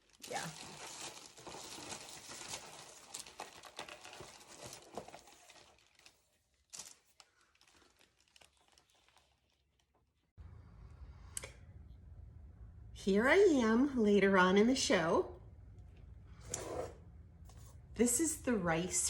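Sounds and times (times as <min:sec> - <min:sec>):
faint crinkling rustle: 0:00.0 - 0:10.3
low steady hum: 0:10.4 - 0:19.0.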